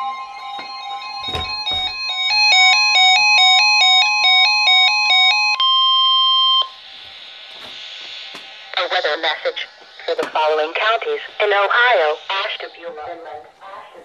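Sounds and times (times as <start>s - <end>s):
steady warning alarm tone: 0.0s - 9.0s
radio hiss: 6.8s - 14.0s.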